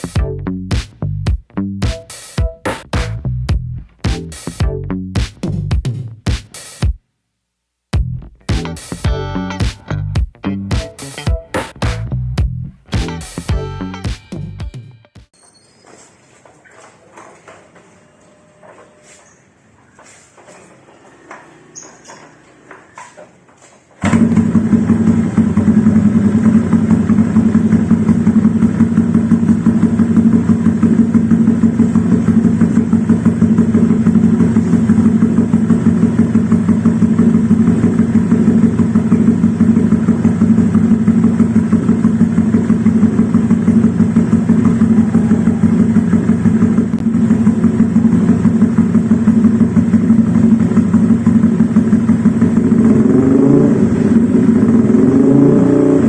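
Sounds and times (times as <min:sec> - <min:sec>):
scooter engine idling: 0:24.0 - 0:56.0.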